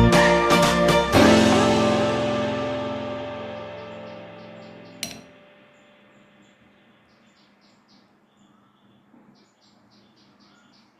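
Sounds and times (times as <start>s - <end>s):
background music: 0.0s - 5.3s
sharp click: 5.0s - 5.4s.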